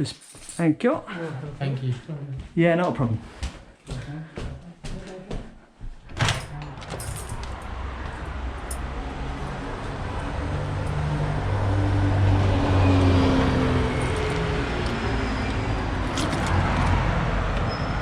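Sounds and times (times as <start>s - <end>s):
street traffic: 6.3s - 18.0s
vehicle engine hum passing: 6.6s - 18.0s.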